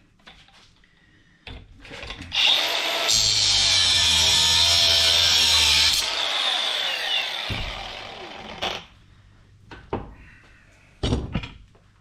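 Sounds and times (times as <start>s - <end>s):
power tool whine winding down: 2.4s - 8.8s.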